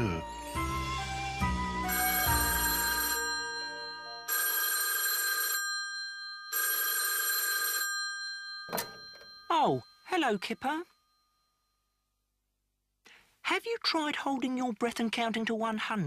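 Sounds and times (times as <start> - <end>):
telephone bell ringing: 1.8 - 11.9.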